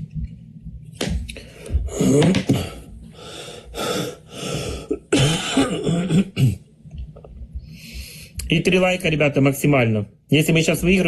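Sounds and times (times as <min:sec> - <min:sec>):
man coughing: 0:04.8 - 0:06.7.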